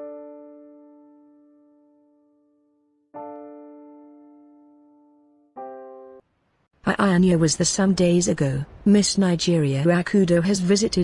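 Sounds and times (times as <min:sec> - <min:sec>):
electric piano chord: 0:00.0 - 0:06.2.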